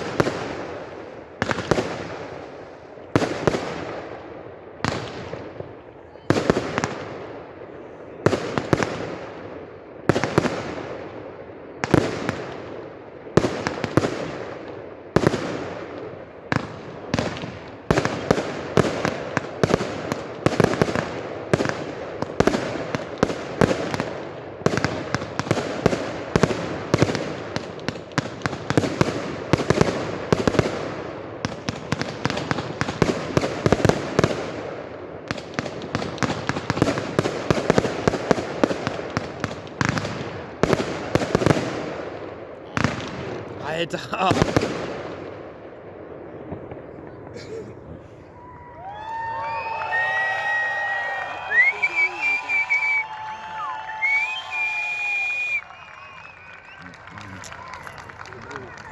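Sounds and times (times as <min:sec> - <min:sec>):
fireworks bursting in loud bangs: 0:00.0 - 0:07.5, 0:11.8 - 0:47.4.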